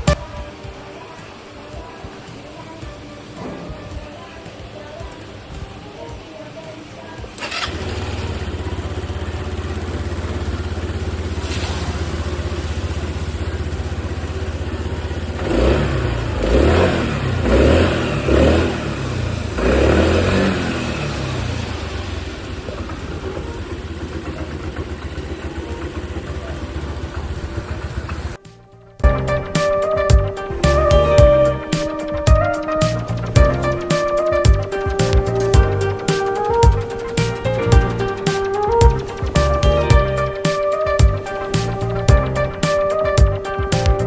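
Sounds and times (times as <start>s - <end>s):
scooter engine idling and revving: 7.2s - 28.4s, 30.1s - 44.0s.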